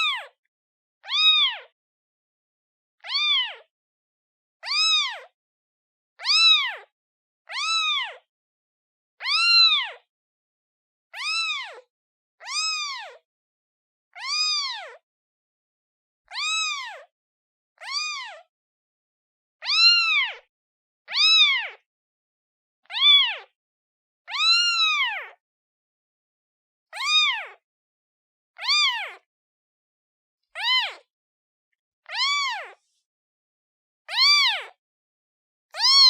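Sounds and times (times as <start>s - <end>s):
kitten meowing: 0.0s - 0.4s, 1.0s - 1.7s, 3.0s - 3.7s, 4.6s - 5.3s, 6.2s - 6.8s, 7.5s - 8.2s, 9.2s - 10.0s, 11.2s - 11.8s, 12.4s - 13.2s, 14.2s - 15.0s, 16.3s - 17.1s, 17.8s - 18.4s, 19.6s - 20.5s, 21.1s - 21.8s, 22.9s - 23.5s, 24.3s - 25.4s, 26.9s - 27.6s, 28.6s - 29.3s, 30.6s - 31.1s, 32.0s - 32.8s, 34.1s - 34.8s, 35.8s - 36.0s.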